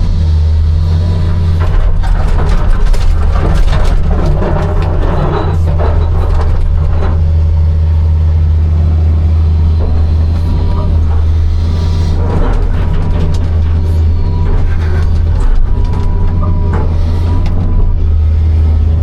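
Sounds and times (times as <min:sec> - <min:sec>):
excavator diesel engine running: 0:00.0 - 0:19.0
stone scraping and clattering: 0:01.2 - 0:07.9, 0:09.8 - 0:17.7.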